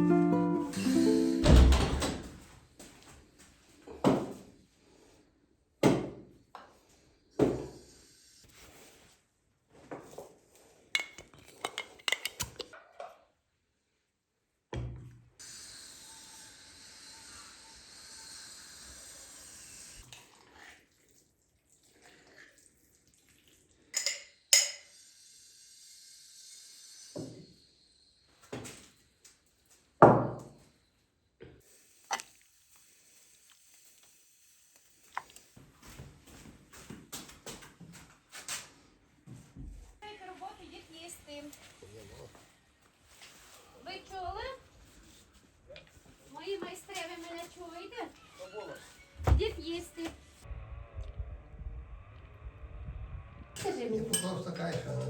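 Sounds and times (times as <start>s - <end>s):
dishes knocked and set down: 11.0s - 12.7s
dishes clinking and clattering: 11.0s - 12.8s, 24.0s - 24.9s, 54.1s - 54.8s.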